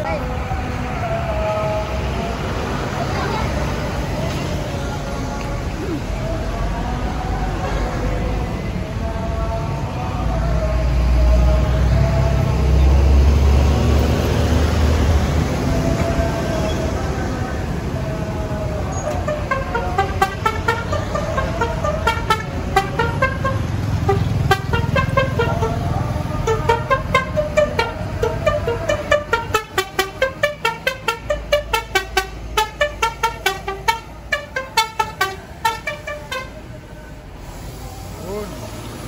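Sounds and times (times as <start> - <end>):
bus engine running: 0.0 - 39.0
musical bus horn toots: 18.9 - 36.7.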